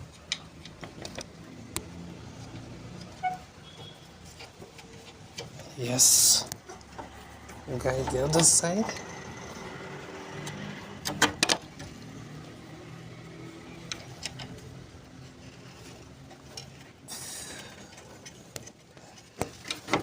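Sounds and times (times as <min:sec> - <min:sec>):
metallic clicks and knocks: 0:00.0 - 0:01.8, 0:10.4 - 0:12.1.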